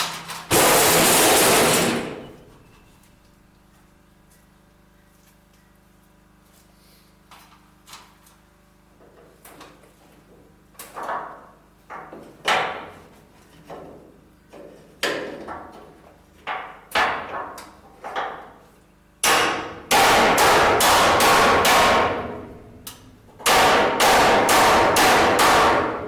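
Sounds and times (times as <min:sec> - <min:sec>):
loud continuous metallic noise: 0:00.0 - 0:03.0, 0:19.2 - 0:26.0
hammer striking steel door: 0:00.5 - 0:02.4, 0:19.2 - 0:22.8, 0:23.4 - 0:26.0.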